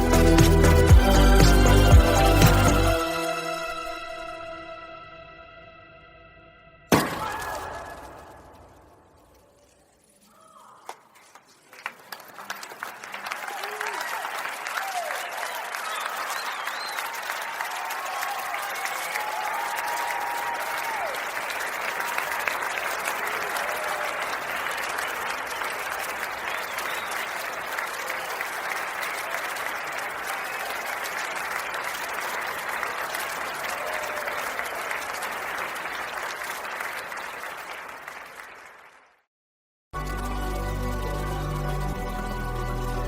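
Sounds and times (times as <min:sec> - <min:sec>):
audience applauding: 0:00.0 - 0:03.7, 0:10.9 - 0:39.3.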